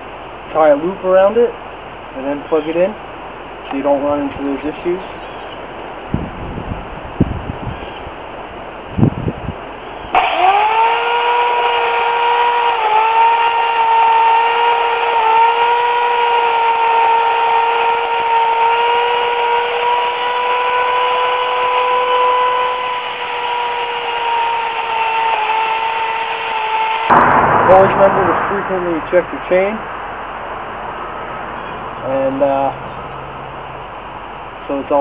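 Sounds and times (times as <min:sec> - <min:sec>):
electric chainsaw whining: 0:10.1 - 0:27.1.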